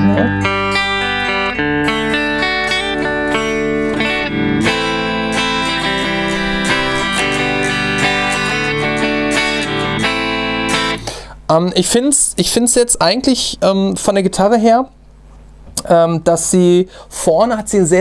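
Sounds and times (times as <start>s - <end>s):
clean electric guitar: 0.0s - 11.8s.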